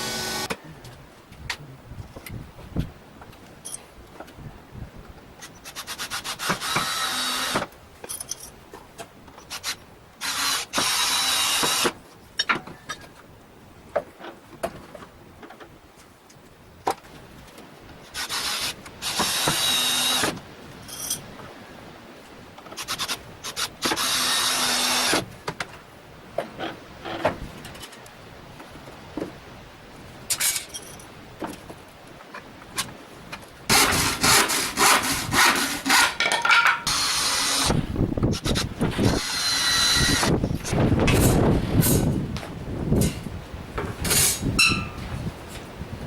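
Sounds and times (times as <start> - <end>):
saw whine: 0.0 - 0.6.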